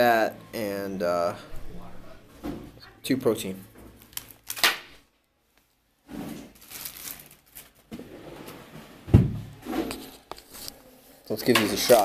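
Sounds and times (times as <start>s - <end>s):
plastic candy wrapper crinkling: 4.0s - 5.0s, 6.5s - 7.9s.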